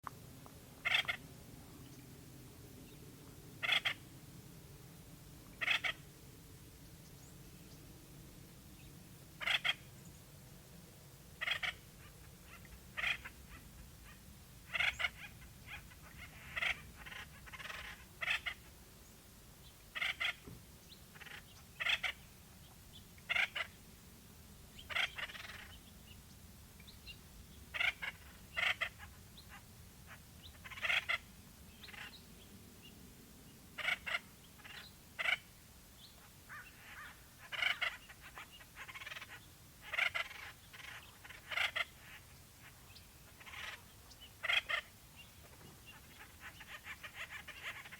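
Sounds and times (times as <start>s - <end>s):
woodpeckers calling: 0.8s - 1.2s, 3.6s - 4.0s, 5.6s - 6.0s, 9.4s - 9.9s, 11.4s - 18.7s, 20.0s - 22.3s, 24.8s - 25.9s, 26.8s - 32.2s, 33.8s - 47.9s.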